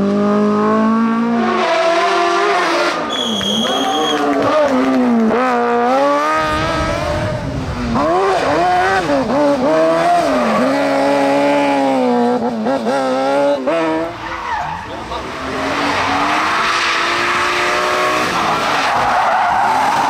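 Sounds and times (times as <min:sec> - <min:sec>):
race car engine revving: 0:00.0 - 0:20.0.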